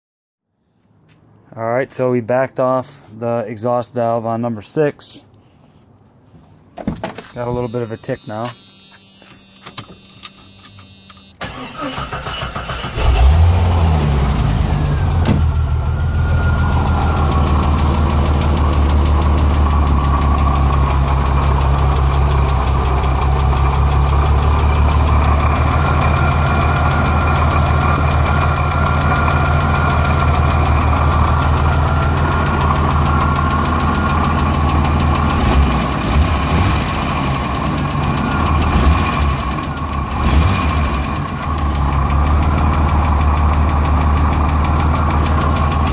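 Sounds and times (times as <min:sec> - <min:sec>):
car engine cranking and idling: 0:11.4 - 0:45.9.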